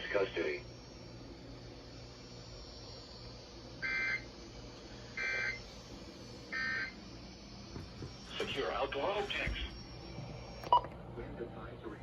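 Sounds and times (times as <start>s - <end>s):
radio hum and hiss: 0.0s - 12.0s
two-tone digital squawks: 3.8s - 4.3s.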